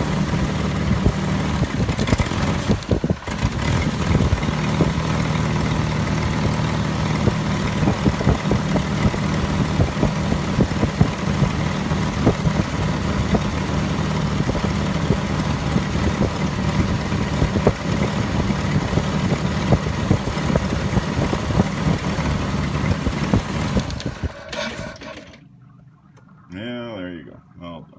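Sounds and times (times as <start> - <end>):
car engine idling: 0.0 - 27.5.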